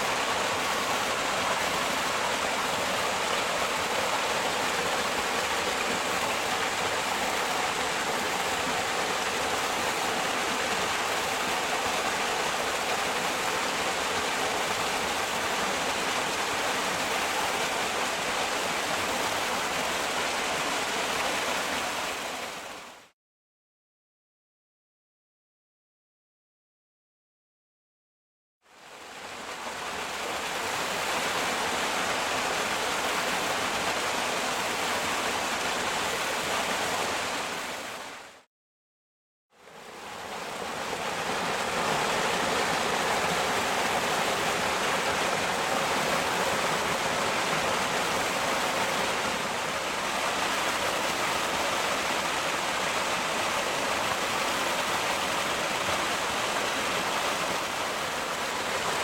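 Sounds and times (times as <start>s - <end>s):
waterfall splashing: 40.0s - 59.0s.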